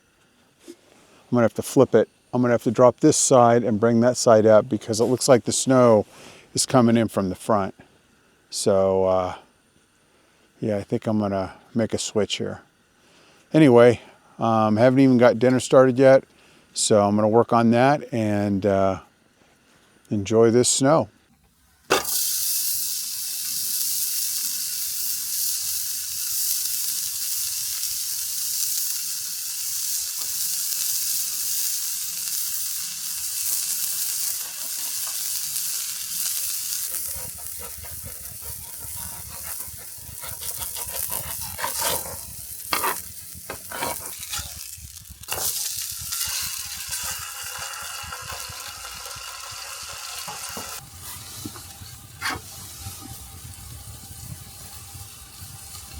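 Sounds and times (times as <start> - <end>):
burger patties sizzling: 21.7 - 55.9
utensil knocking and scraping: 36.9 - 44.6.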